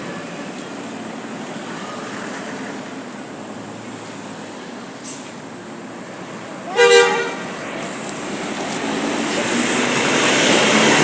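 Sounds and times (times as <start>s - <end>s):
bus running noise: 0.0s - 11.0s
musical air horn blast: 6.7s - 7.5s.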